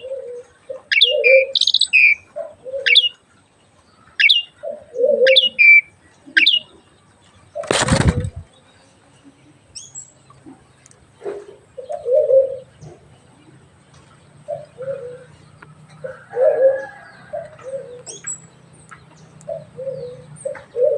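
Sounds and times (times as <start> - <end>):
wings flapping: 7.6 - 8.5
low cooing notes: 11.7 - 13.0, 14.4 - 18.2, 19.5 - 20.9.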